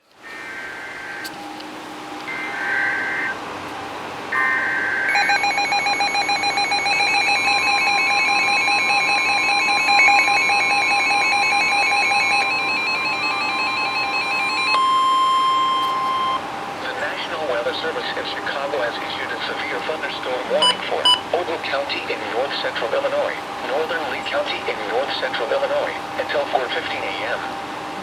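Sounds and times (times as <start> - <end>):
steady warning tone: 0.2 - 3.6, 4.2 - 27.8
screechy data bursts: 4.4 - 14.7
electronic alarm beeping rapidly: 4.4 - 16.4, 20.6 - 21.3.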